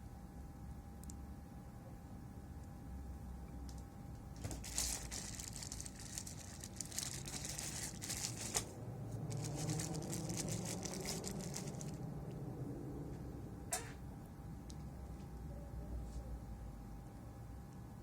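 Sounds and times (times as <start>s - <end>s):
crinkly rustling and crackling: 4.3s - 12.1s.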